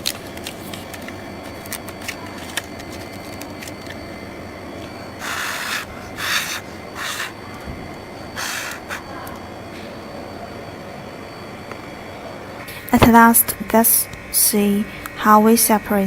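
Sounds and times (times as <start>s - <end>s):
faint machine hum: 0.0s - 16.0s
hissing breaths blown: 5.2s - 7.6s, 8.2s - 9.3s.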